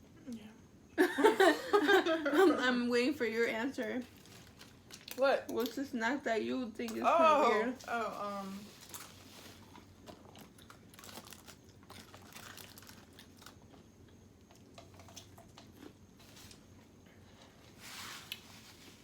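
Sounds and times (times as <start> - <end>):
chewing and crunching: 4.0 - 5.9, 7.9 - 19.0.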